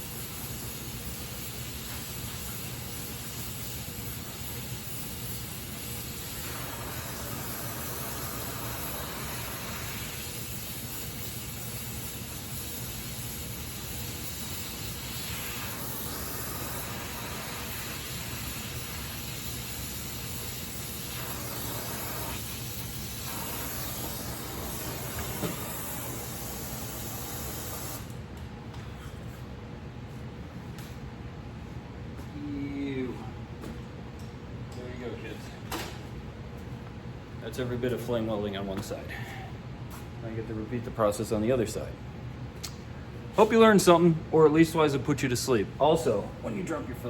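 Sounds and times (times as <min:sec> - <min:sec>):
welding torch flame hissing: 0:00.0 - 0:28.2.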